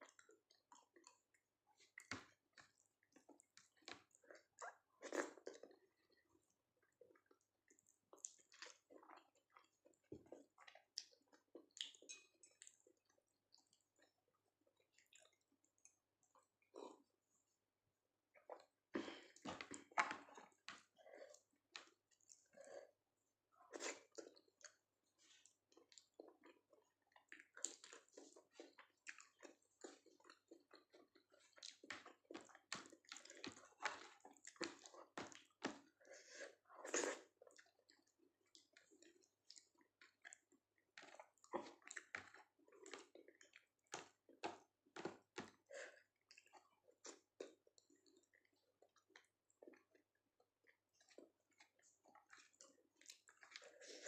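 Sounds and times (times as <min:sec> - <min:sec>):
chewing wet food: 0:00.0 - 0:54.0.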